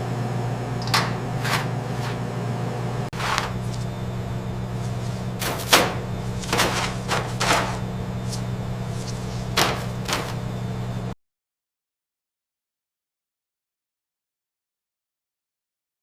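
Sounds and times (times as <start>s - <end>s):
machinery humming: 0.0s - 11.2s.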